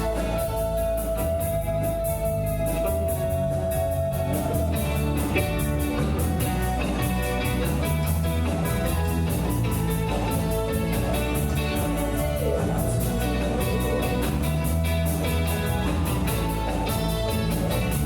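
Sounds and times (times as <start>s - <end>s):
electric guitar: 0.0s - 18.0s
rock band playing live: 0.0s - 18.0s.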